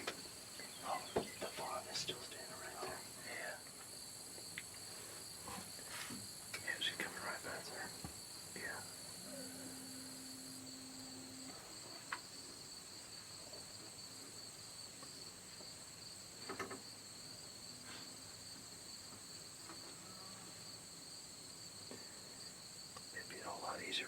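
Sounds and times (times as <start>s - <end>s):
faint rustle: 0.0s - 14.4s
insects trilling: 0.0s - 24.0s.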